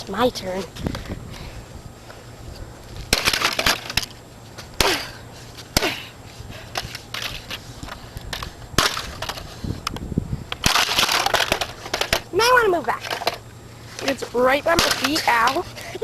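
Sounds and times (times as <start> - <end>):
plastic cracking and rattling: 10.6 - 12.2.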